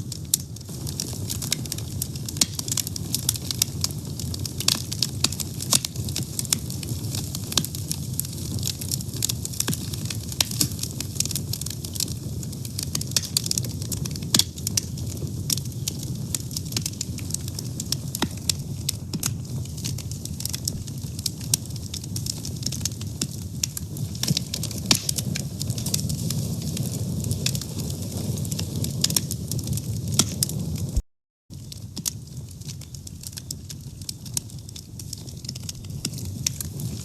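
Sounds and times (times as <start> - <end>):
low rush of flame: 0.0 - 31.0, 31.6 - 37.0
fire crackling and popping: 0.0 - 37.0.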